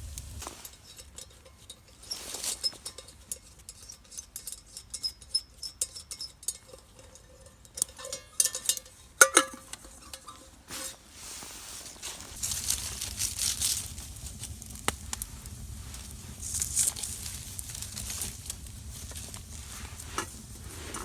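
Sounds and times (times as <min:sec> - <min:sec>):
metal cookware clattering: 0:00.5 - 0:10.9
metal cookware clinking and tapping: 0:00.6 - 0:10.5.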